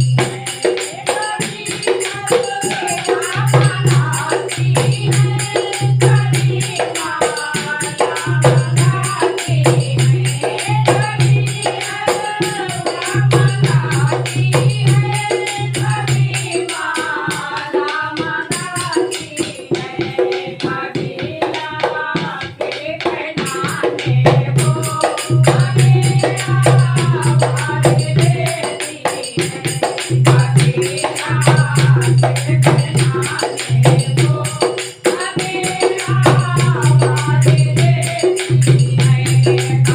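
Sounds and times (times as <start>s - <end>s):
jingling tambourine-like percussion: 0.0s - 39.9s.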